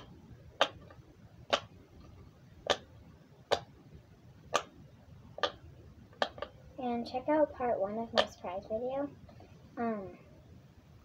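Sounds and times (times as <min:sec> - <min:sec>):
fidget toy bubbles popping: 0:05.4 - 0:05.6.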